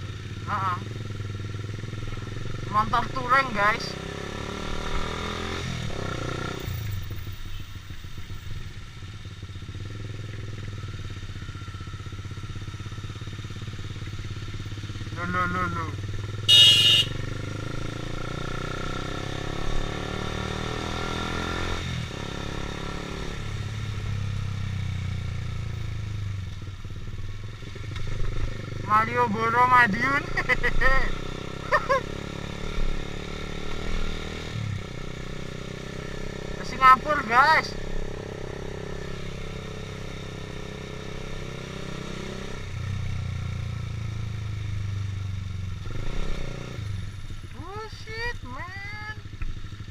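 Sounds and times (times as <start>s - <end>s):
motorcycle engine accelerating: 0.0s - 49.9s
horn beep: 16.5s - 17.2s.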